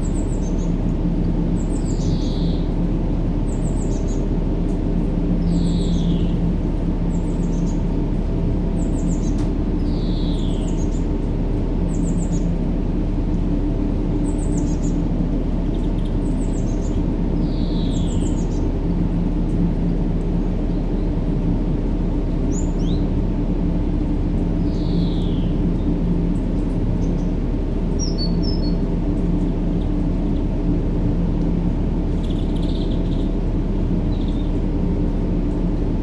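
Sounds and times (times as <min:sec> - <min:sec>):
small birds chirping: 0:01.5 - 0:02.8, 0:05.4 - 0:06.4, 0:08.7 - 0:11.1, 0:14.2 - 0:18.8, 0:24.6 - 0:30.6, 0:32.1 - 0:34.6.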